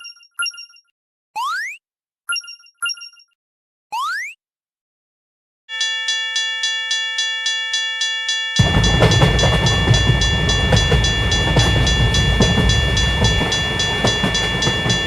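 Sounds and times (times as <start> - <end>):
railroad crossing bell ringing: 5.7 - 15.0
train rumbling past: 8.6 - 15.0
train wheel clicks: 8.6 - 15.0.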